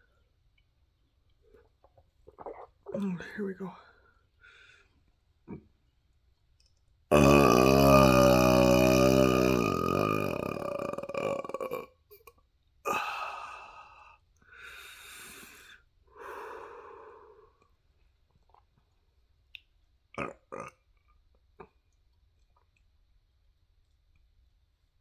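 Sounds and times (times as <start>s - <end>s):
long deep burp: 7.1s - 12.0s, 20.2s - 20.9s.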